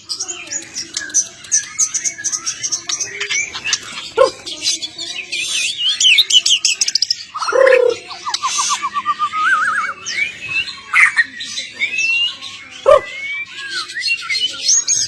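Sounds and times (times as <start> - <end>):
songbird chirps and trills: 0.0 - 15.0.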